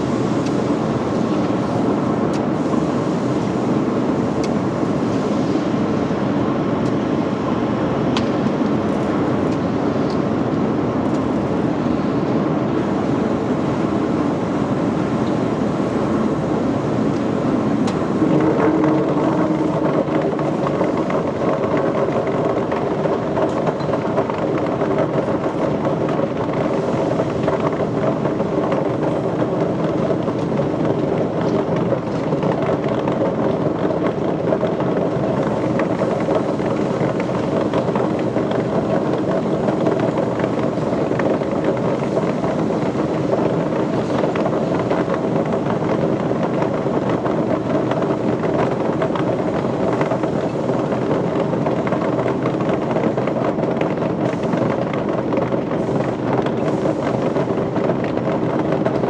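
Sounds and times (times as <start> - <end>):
machinery droning: 12.8 - 32.2.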